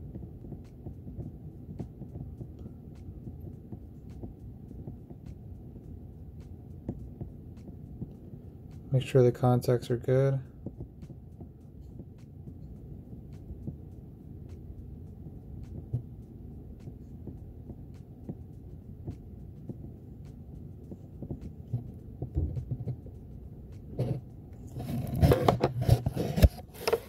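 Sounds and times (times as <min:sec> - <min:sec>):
steady low rumble: 0:00.0 - 0:26.6.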